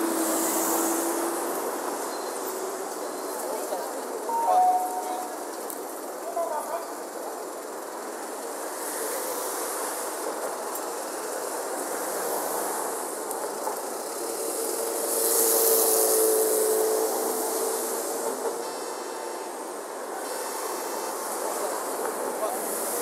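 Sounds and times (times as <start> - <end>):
large vehicle hiss: 0.0 - 3.2, 8.0 - 23.0
street hubbub: 0.0 - 23.0
traffic noise: 0.0 - 23.0.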